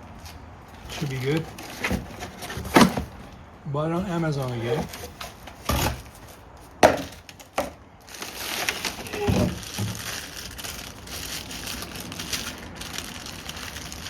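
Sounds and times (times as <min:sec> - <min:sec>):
packing material crinkling: 0:00.2 - 0:03.2, 0:08.0 - 0:14.0.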